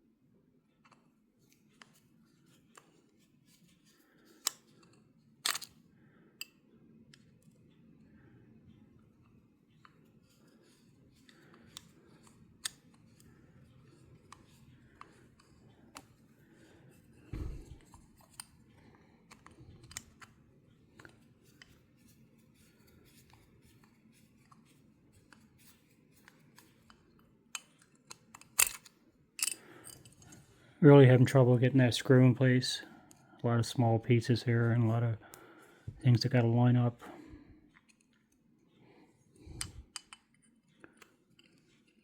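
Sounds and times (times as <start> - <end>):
clicks and taps of metal parts: 4.4 - 5.7, 26.2 - 30.4, 39.5 - 42.0.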